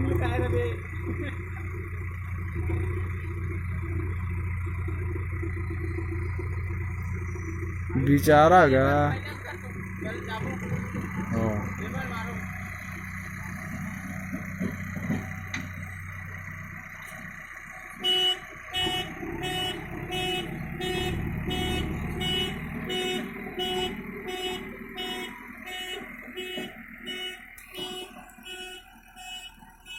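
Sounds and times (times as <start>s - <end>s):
diesel engine running: 0.0s - 29.9s
reversing alarm beeping: 18.0s - 29.9s.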